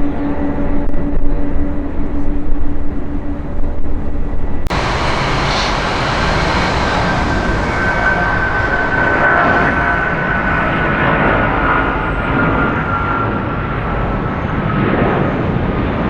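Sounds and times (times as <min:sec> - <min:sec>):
faint jet whine: 0:03.1 - 0:16.0
jet engines roaring: 0:04.7 - 0:16.0.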